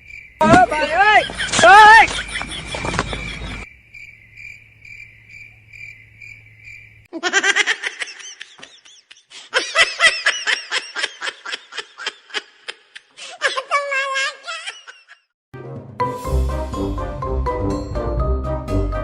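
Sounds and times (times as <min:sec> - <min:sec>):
cricket chirping: 0:00.0 - 0:07.1
loud laughter: 0:00.7 - 0:03.6, 0:07.1 - 0:15.3.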